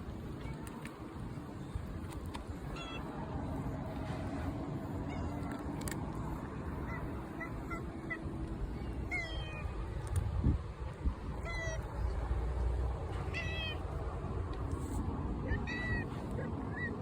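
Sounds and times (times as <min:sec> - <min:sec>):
cats meowing: 0:05.0 - 0:10.0, 0:11.4 - 0:12.2, 0:13.2 - 0:13.9, 0:15.5 - 0:16.6.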